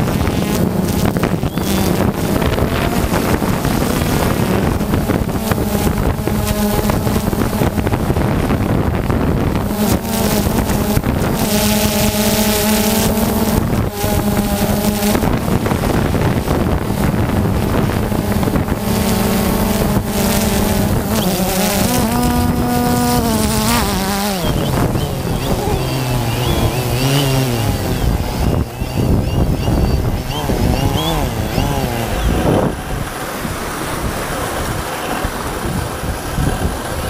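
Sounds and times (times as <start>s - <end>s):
drone propellers humming: 0.0s - 37.0s
wind on microphone: 0.0s - 37.0s.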